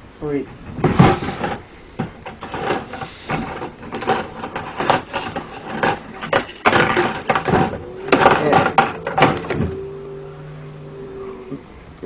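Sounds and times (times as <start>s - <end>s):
kitchen things clattering: 0.5s - 9.8s.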